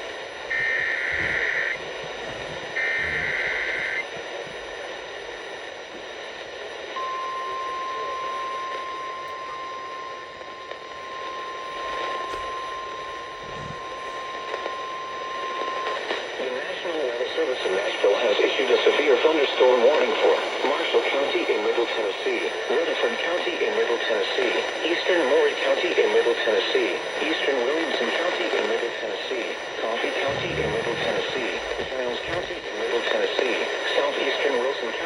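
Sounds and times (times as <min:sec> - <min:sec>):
steady warning alarm tone: 0:00.0 - 0:16.4, 0:26.0 - 0:35.0
radio hiss: 0:00.0 - 0:35.0.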